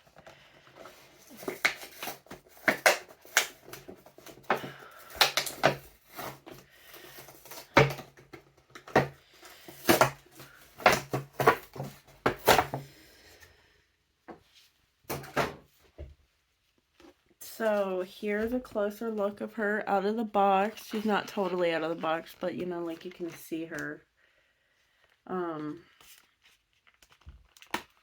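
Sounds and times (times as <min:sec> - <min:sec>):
doll box being opened by hand: 0:00.1 - 0:12.9.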